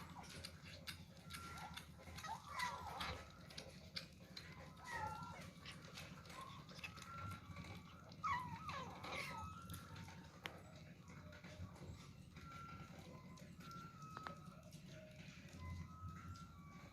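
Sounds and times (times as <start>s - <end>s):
eating clicks: 0.0s - 10.6s
kittens chewing wetly: 0.0s - 16.9s.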